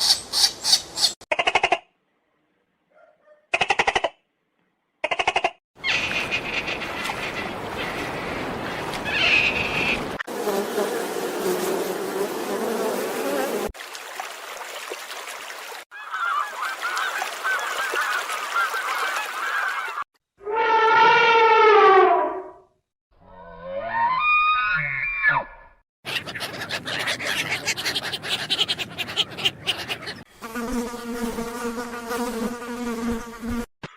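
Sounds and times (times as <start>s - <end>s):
outdoor noise: 0.0s - 33.9s
loud drawn-out animal call: 19.6s - 22.5s, 23.2s - 30.3s.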